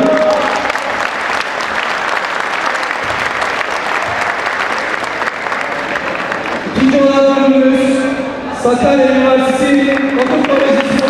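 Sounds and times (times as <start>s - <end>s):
crowd applauding: 0.0s - 7.4s, 9.7s - 11.0s.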